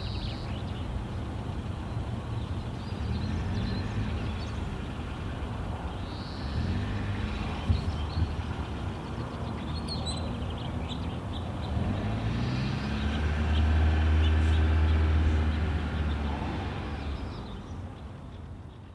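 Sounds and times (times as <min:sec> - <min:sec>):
birds chirping: 0:00.0 - 0:18.9
passing engine drone: 0:11.7 - 0:17.4.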